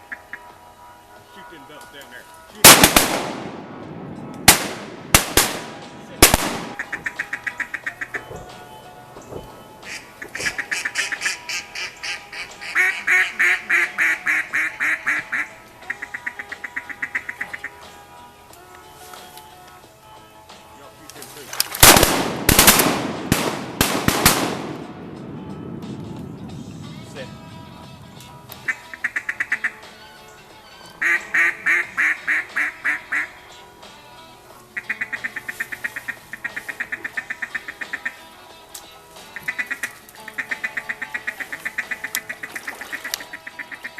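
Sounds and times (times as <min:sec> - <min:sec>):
duck quacking: 0:00.0 - 0:00.5, 0:06.3 - 0:08.7, 0:09.8 - 0:17.9, 0:28.6 - 0:30.0, 0:31.0 - 0:33.4, 0:34.7 - 0:38.3, 0:39.3 - 0:43.9.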